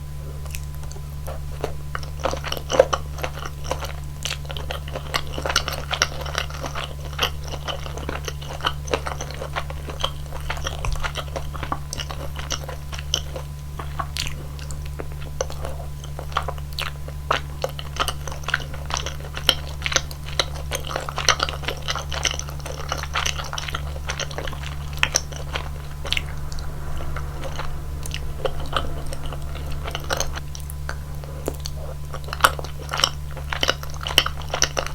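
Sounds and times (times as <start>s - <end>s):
low hum: 23.2s - 31.9s.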